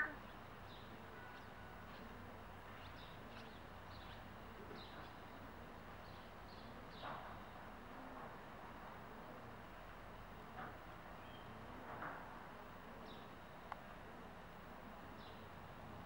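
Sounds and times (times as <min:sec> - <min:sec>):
small birds chirping: 0:00.0 - 0:07.7, 0:11.1 - 0:11.6.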